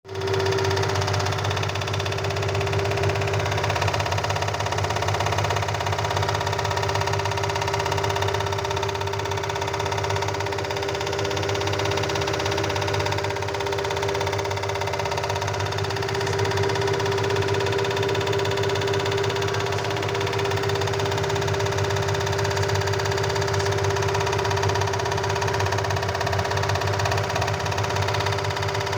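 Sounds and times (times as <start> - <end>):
washing machine running: 0.1 - 28.9.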